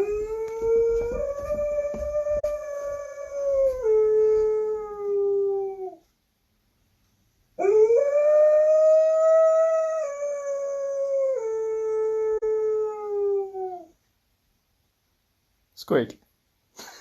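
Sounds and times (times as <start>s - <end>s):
dog howling: 0.0s - 6.0s, 7.6s - 14.0s.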